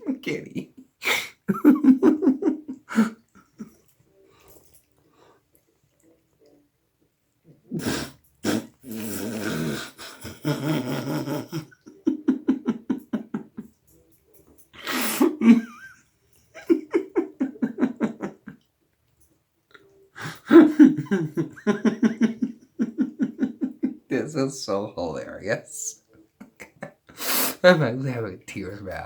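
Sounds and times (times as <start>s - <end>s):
person laughing hard: 1.5s - 3.8s, 8.9s - 13.7s, 14.8s - 16.0s, 16.6s - 18.6s, 20.2s - 24.0s.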